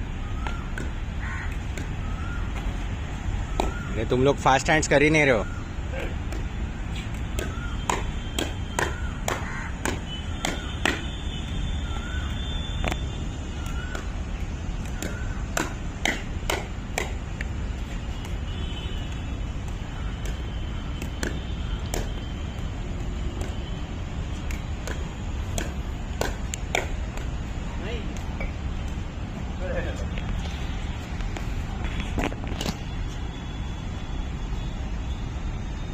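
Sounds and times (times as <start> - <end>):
paddles striking plastic ball: 24.4 - 27.3.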